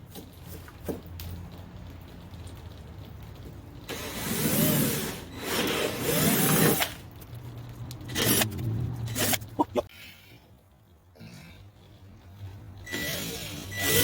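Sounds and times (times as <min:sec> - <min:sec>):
cordless drill whine: 0:12.9 - 0:14.0.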